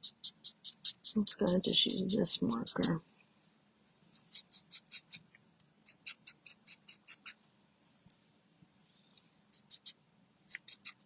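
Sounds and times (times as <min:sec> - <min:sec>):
marker scratching on paper: 0:00.0 - 0:03.0, 0:04.1 - 0:05.2, 0:05.8 - 0:07.4, 0:09.5 - 0:11.0.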